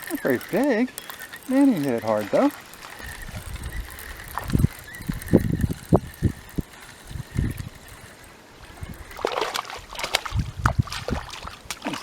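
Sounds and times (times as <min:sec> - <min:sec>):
water splashing from thrashing fish: 0:09.1 - 0:12.0.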